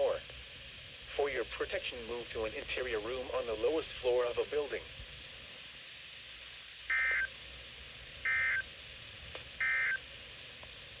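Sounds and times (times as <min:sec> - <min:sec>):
digital data tone bursts: 0:08.3 - 0:08.7.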